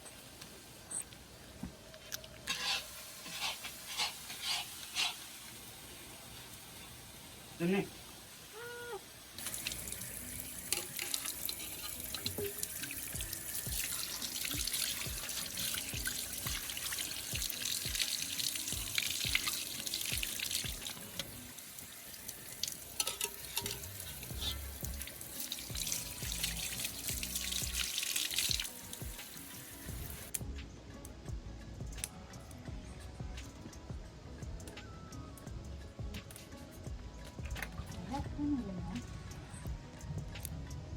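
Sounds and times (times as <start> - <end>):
water splashing and pouring: 9.4 - 30.4.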